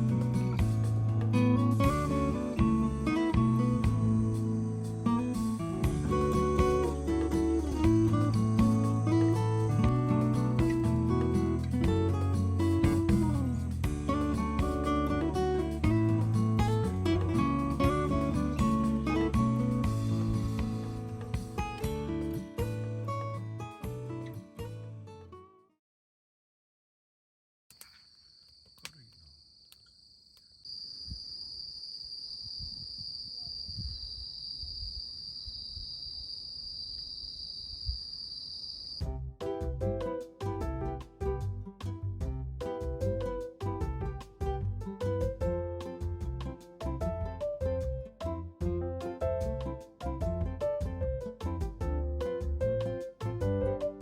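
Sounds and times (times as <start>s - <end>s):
upbeat tune with piano and bass: 0.0s - 25.1s, 39.0s - 54.0s
insects singing: 2.5s - 10.5s.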